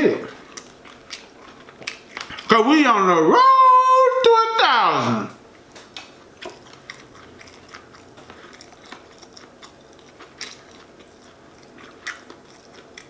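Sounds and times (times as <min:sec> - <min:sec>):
person chewing food: 0:00.4 - 0:02.5, 0:05.8 - 0:13.0.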